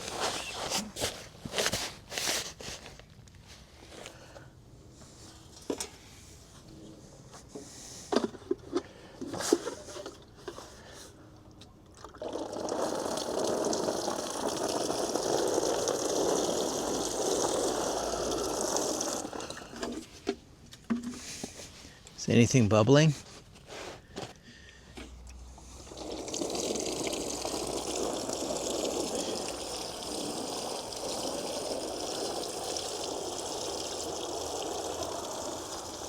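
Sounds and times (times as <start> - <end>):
running water splashing: 25.8 - 36.0.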